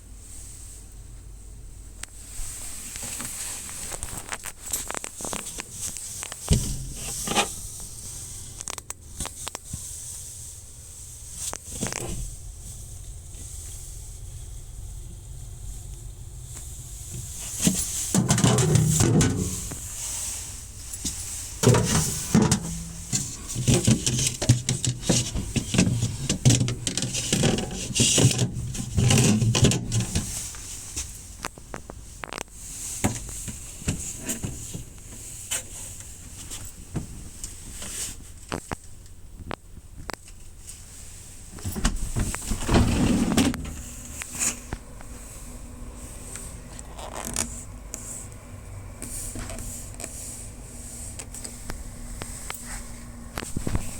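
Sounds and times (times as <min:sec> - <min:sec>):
refrigerator parts clicking and knocking: 0:04.2 - 0:07.6, 0:11.5 - 0:12.4, 0:17.1 - 0:19.9, 0:21.0 - 0:30.4, 0:41.6 - 0:45.0.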